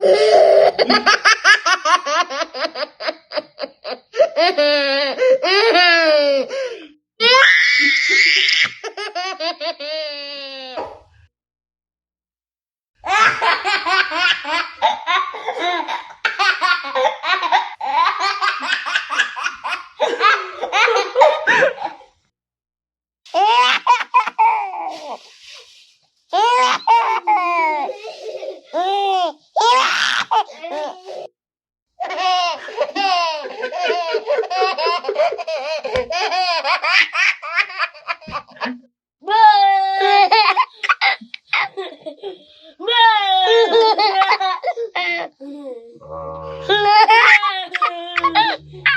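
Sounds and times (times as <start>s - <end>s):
baby laughing: 0.0s - 6.2s, 13.1s - 22.0s, 26.4s - 31.3s, 32.0s - 38.8s, 40.0s - 42.5s, 43.4s - 45.7s, 46.5s - 48.9s.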